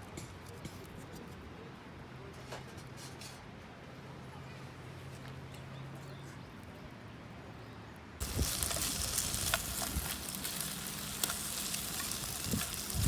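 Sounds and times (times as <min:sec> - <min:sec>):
campfire sizzling and crackling: 0:08.2 - 0:13.0.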